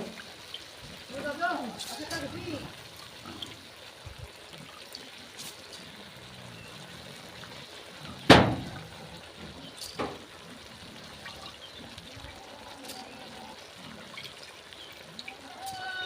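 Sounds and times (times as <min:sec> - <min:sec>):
sharp knock: 0:08.3 - 0:08.7.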